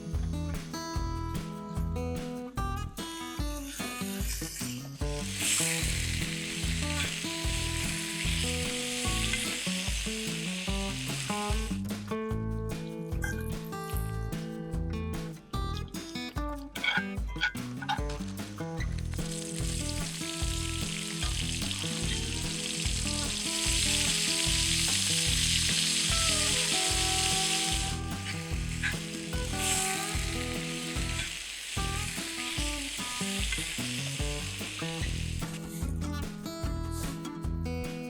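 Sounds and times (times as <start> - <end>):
background music with beat: 0.0 - 38.0
food sizzling in a pan: 4.3 - 11.8, 19.1 - 35.8.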